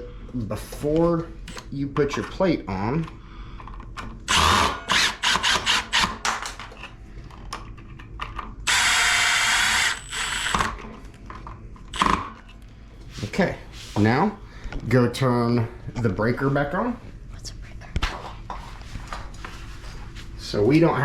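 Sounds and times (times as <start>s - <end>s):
power screwdriver whirring: 4.3s - 6.2s, 8.7s - 10.8s, 11.9s - 12.3s.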